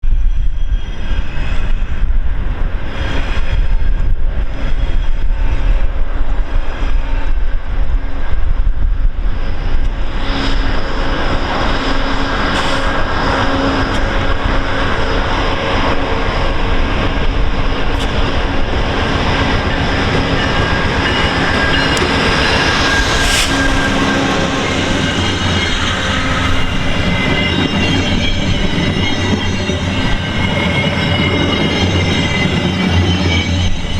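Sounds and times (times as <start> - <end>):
train rumble: 0.0 - 33.9
wheel squeal: 11.8 - 33.9.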